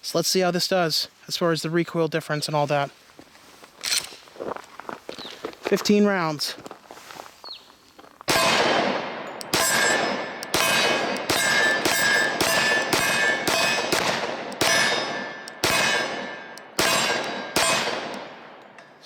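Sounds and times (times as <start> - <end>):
pistol shots: 8.3 - 18.8
ringing tone: 9.2 - 14.0.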